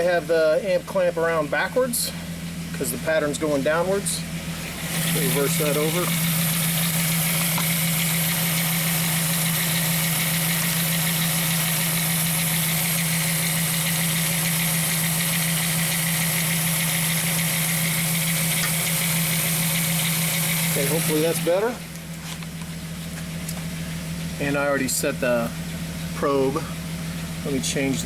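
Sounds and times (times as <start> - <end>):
van engine idling with misfire: 0.0 - 28.0.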